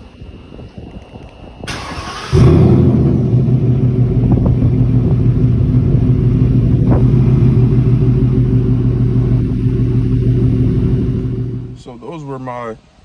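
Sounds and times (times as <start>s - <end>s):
car engine idling with deep rumble: 2.3s - 12.0s.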